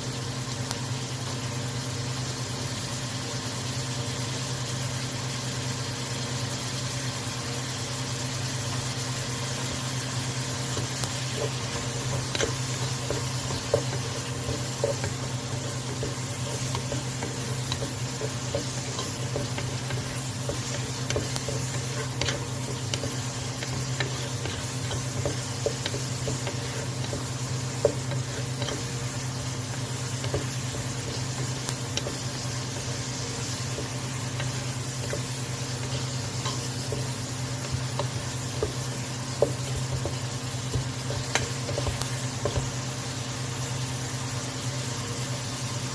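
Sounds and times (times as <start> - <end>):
vegetables sizzling in a pan: 0.0 - 45.9
steady low hum: 8.9 - 43.8
utensil clicking against pan: 10.7 - 42.8.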